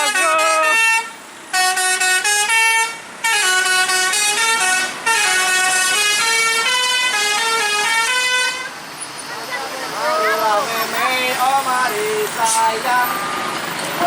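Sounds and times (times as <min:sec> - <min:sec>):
musical bus horn tune: 0:00.0 - 0:08.8.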